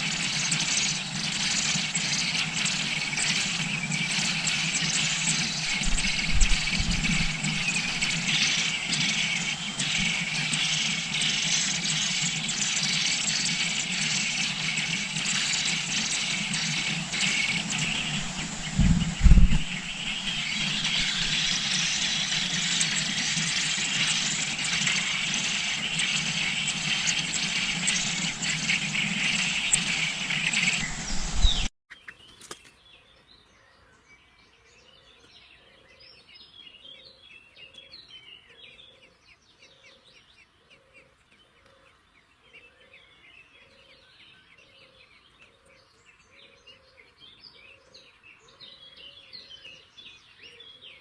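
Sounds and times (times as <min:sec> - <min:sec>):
loud steady noise: 0:00.0 - 0:31.7
small birds chirping: 0:00.0 - 0:51.0.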